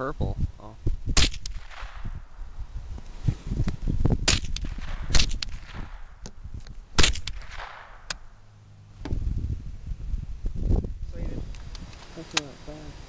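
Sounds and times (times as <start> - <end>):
rifle shots with echo: 1.2 - 2.4, 4.2 - 6.2, 7.0 - 8.4.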